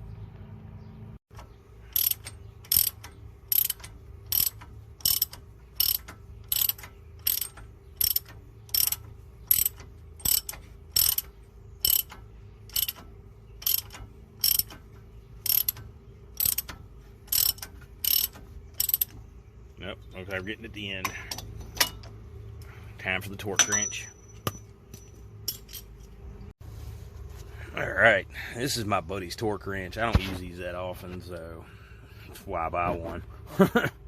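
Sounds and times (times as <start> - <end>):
ratchet wrench clicking: 1.9 - 14.8, 15.4 - 19.2.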